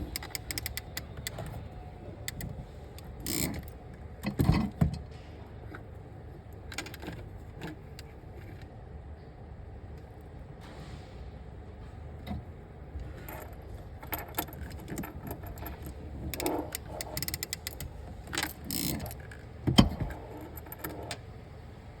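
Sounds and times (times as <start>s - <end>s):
metal parts clicking and rattling: 0.0s - 1.6s, 2.2s - 5.0s, 6.7s - 8.6s, 13.0s - 21.2s.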